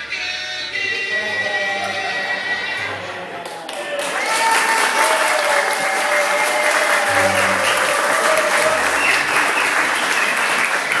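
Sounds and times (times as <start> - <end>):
audience applauding: 3.4 - 11.0
music playing: 7.0 - 10.0.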